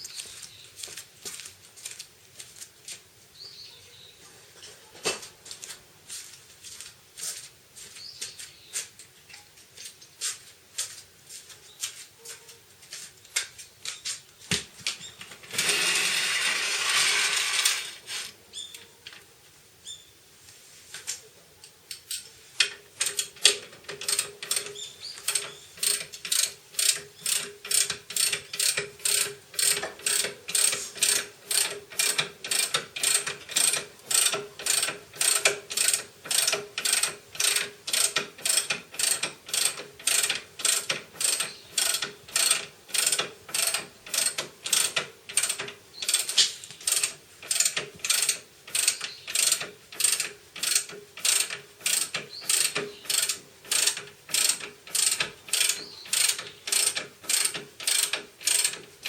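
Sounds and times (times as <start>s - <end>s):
ratchet wrench clicking: 15.5s - 18.3s, 22.1s - 58.9s.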